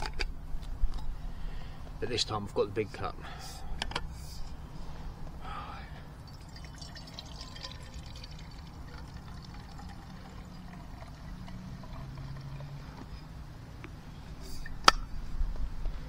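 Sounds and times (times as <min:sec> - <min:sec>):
hot drink pouring into cup: 0:06.2 - 0:13.0.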